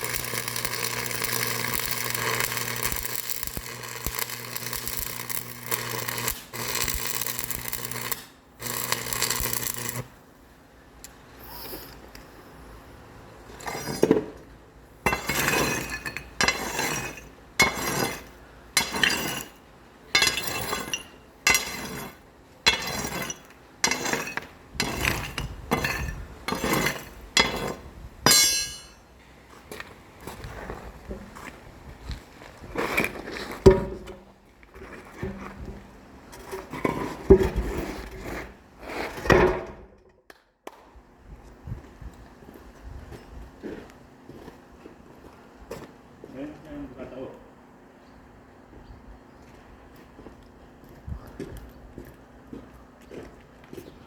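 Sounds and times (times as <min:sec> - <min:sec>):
metallic clinking strokes: 0:00.0 - 0:10.0, 0:28.3 - 0:29.0
mechanical hum: 0:00.0 - 0:40.0, 0:40.8 - 0:54.0.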